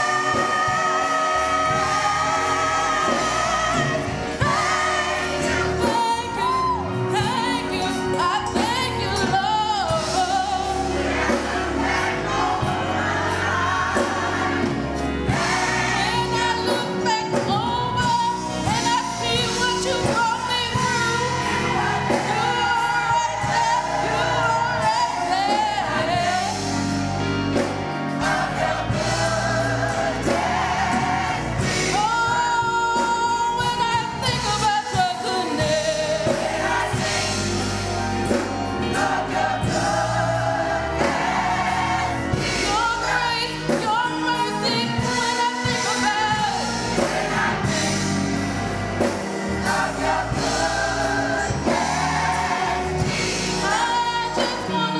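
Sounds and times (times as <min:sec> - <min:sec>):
gospel choir singing: 0:00.0 - 0:54.9
instrumental accompaniment: 0:00.0 - 0:54.9
moving bass line: 0:35.6 - 0:54.8.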